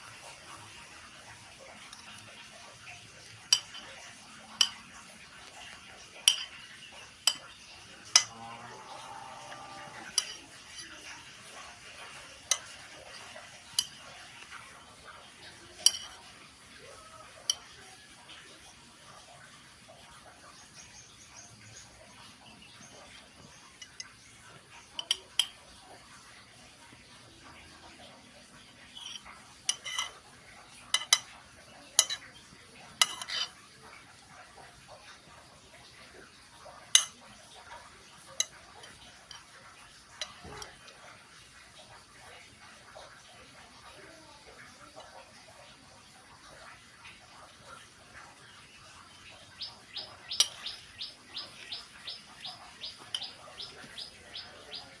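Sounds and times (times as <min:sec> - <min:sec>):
spoon scraping a plate: 0:02.8 - 0:08.4, 0:09.4 - 0:14.5, 0:15.8 - 0:16.3, 0:28.8 - 0:31.3, 0:32.0 - 0:32.3, 0:33.0 - 0:33.6
spoon clinking on a plate: 0:03.3 - 0:05.0, 0:06.2 - 0:08.3, 0:10.0 - 0:11.0, 0:12.0 - 0:14.5, 0:15.8 - 0:16.3, 0:17.4 - 0:17.8, 0:24.9 - 0:25.7, 0:28.9 - 0:31.4, 0:32.0 - 0:32.4, 0:33.0 - 0:33.6, 0:36.9 - 0:37.3, 0:38.2 - 0:40.8, 0:50.2 - 0:50.8, 0:52.4 - 0:54.9
small bird chirping: 0:20.2 - 0:25.6, 0:48.3 - 0:55.0.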